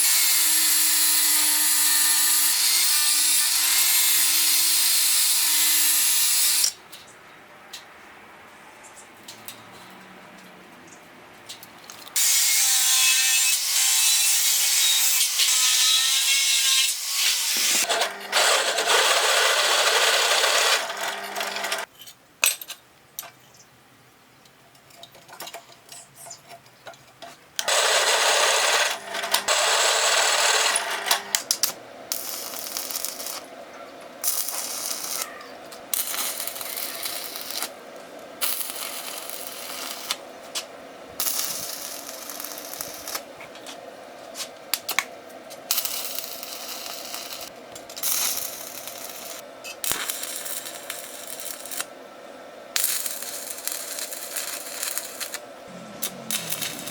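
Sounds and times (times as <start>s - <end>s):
power tool working metal: 12.2s - 21.9s, 27.6s - 31.5s, 52.8s - 56.9s.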